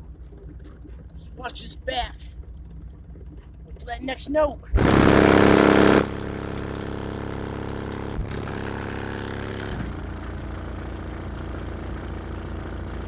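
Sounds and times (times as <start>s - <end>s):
deep bass through subwoofers: 4.6s - 13.0s
buzz: 4.8s - 10.0s.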